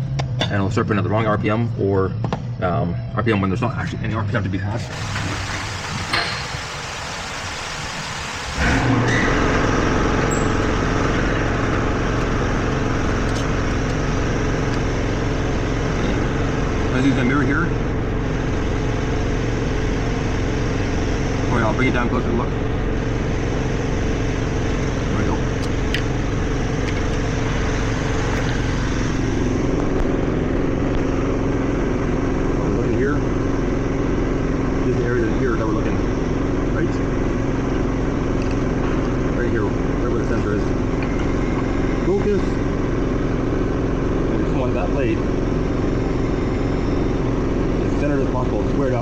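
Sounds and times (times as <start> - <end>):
low hum: 0.0 - 49.0
motor droning: 0.0 - 49.0
mechanical running noise: 4.7 - 49.0.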